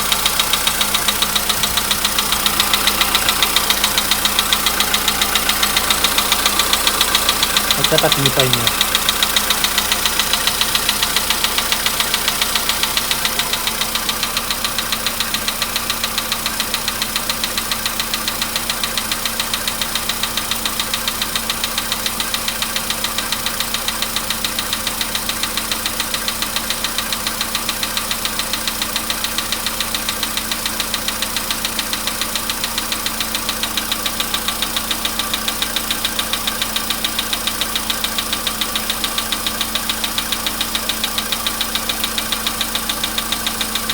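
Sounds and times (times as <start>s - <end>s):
metallic engine knock: 0.0s - 17.8s
car engine idling: 0.0s - 43.9s.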